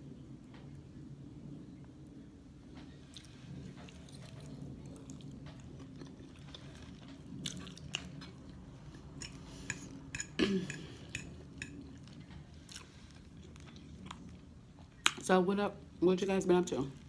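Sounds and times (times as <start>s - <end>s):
low steady hum: 0.0s - 17.0s
person chewing food: 3.1s - 15.2s.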